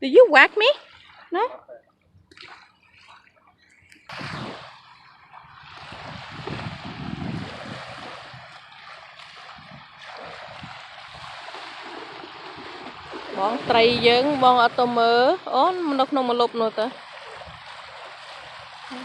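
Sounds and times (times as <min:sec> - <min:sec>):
wind buffeting microphone: 0:04.1 - 0:18.7.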